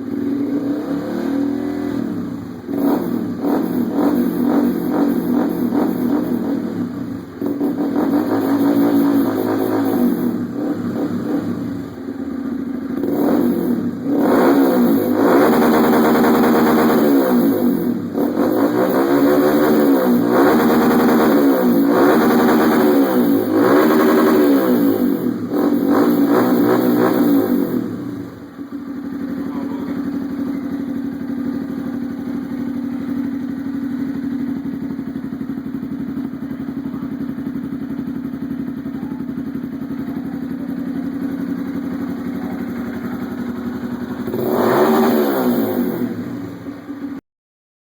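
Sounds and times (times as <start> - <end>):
motorcycle engine revving: 0.0 - 47.2
motorcycle idling: 0.0 - 47.2.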